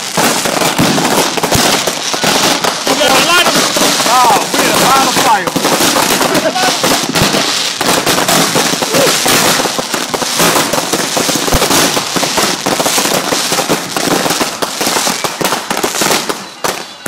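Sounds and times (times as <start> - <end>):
fireworks crackling pops: 0.0 - 17.0.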